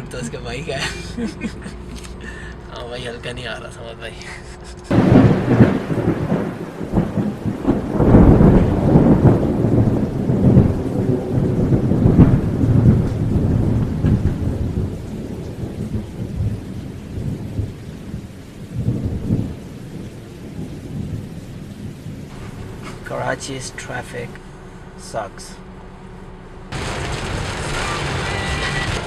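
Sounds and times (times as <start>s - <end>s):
heavy rain with gusting rumble: 0.0s - 29.0s.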